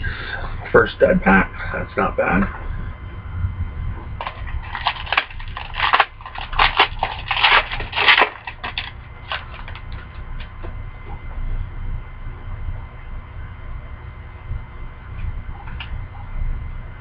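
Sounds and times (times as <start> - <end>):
plastic wrapper crinkling: 4.2 - 10.5.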